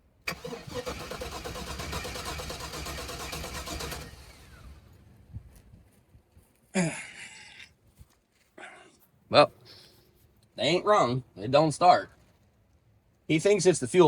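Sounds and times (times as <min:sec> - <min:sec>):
engine cranking on starter: 0:00.2 - 0:05.2.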